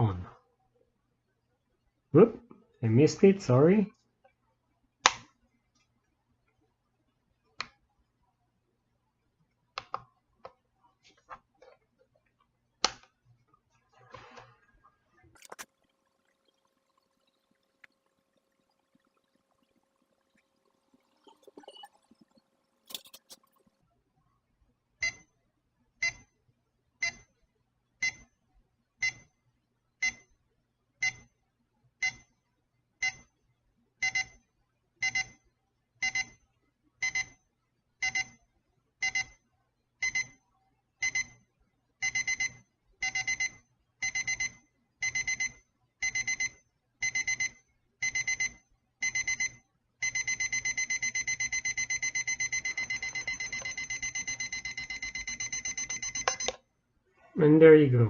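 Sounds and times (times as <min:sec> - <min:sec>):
alarm clock beeping: 0:34.0 - 0:34.4, 0:35.0 - 0:35.4, 0:36.0 - 0:36.3, 0:37.0 - 0:37.4, 0:38.0 - 0:38.4, 0:39.0 - 0:39.3, 0:40.0 - 0:40.4, 0:41.0 - 0:41.3, 0:42.0 - 0:56.6.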